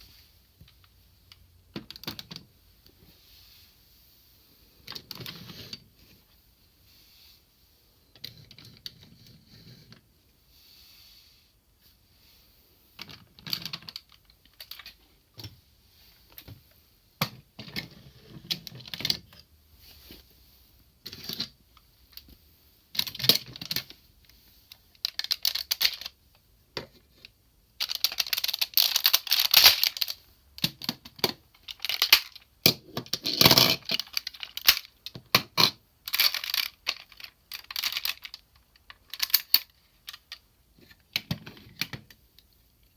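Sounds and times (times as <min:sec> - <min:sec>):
plastic parts rattling: 0:23.0 - 0:24.0, 0:24.9 - 0:26.2, 0:27.8 - 0:42.2
plastic toy clicking and clattering: 0:23.0 - 0:24.0, 0:24.9 - 0:26.2, 0:27.8 - 0:42.2.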